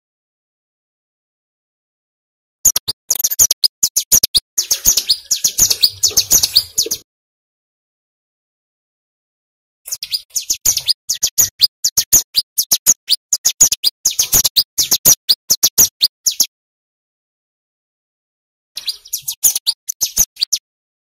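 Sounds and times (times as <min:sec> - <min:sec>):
bird chirping high and fast: 0:02.6 - 0:07.0, 0:09.9 - 0:16.5, 0:18.8 - 0:20.6.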